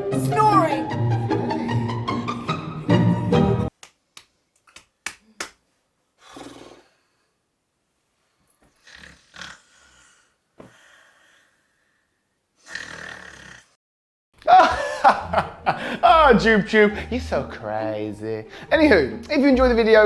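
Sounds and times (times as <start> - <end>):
music: 0.0 - 3.7, 14.8 - 20.0
person snoring: 8.8 - 11.6, 12.6 - 13.8.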